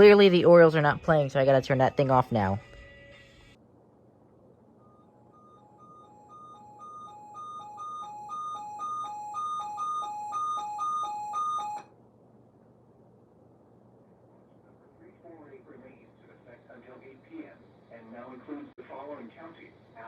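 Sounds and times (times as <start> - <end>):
high and low electronic alert beeps: 4.8 - 11.8.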